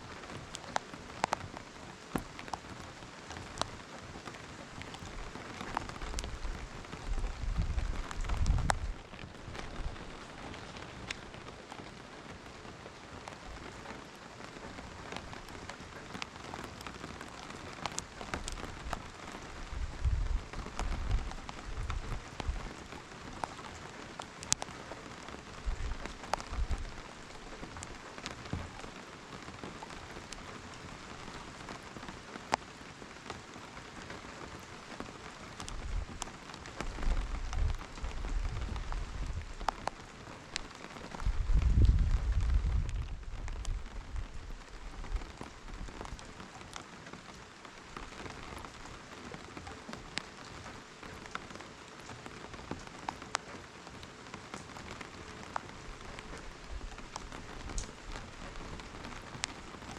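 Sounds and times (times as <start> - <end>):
raindrops ticking on a surface: 0.0 - 59.9
steady rain falling: 0.0 - 59.9.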